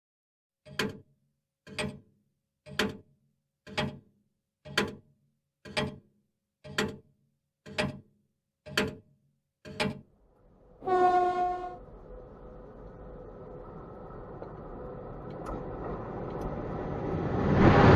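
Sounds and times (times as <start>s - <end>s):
sharp clock-like ticks: 0.6s - 10.0s
moving train running noise: 10.4s - 17.9s
train whistle: 10.8s - 11.9s.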